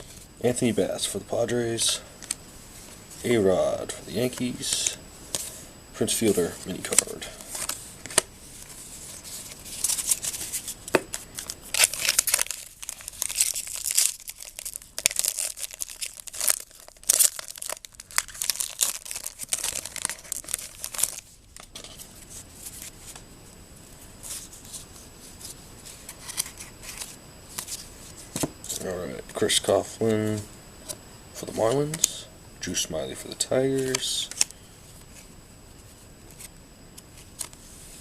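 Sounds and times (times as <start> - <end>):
cards rustling and clicking: 1.8 - 23.2, 24.2 - 35.3, 36.2 - 37.7
wrapper crinkling and tearing: 9.4 - 21.7.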